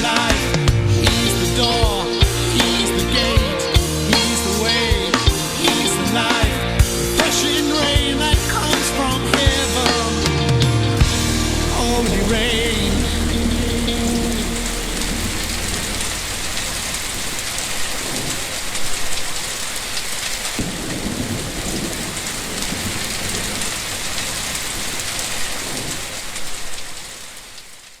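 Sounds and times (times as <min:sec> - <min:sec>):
thunder rumbling: 0:10.6 - 0:27.3
heavy rain falling: 0:10.7 - 0:28.0.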